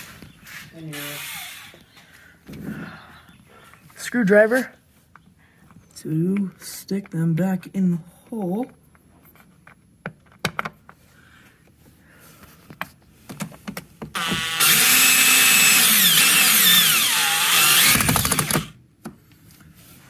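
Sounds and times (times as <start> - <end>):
electric screwdriver motor running: 14.2 - 18.8.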